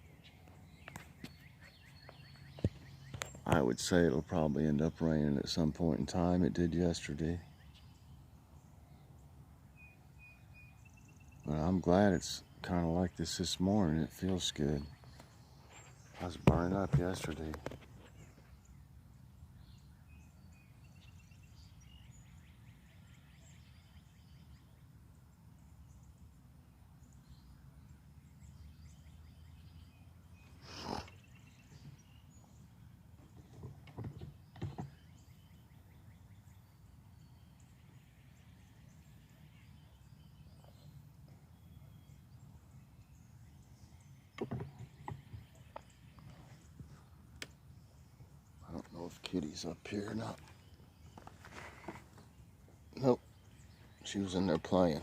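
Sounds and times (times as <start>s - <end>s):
small birds chirping: 0.0s - 55.0s
knocks and creaks: 33.2s - 35.0s, 44.4s - 47.5s, 50.2s - 52.3s.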